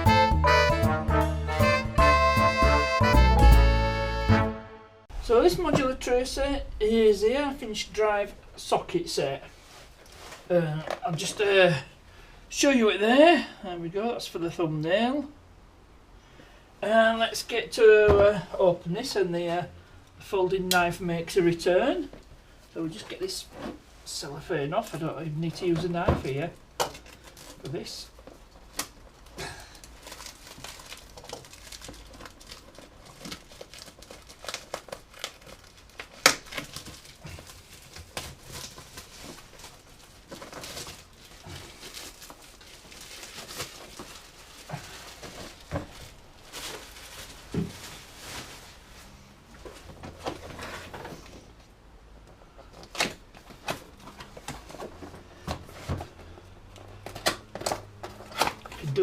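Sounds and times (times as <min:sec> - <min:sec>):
shrink-wrap crinkling and tearing: 0:28.4 - 0:48.8.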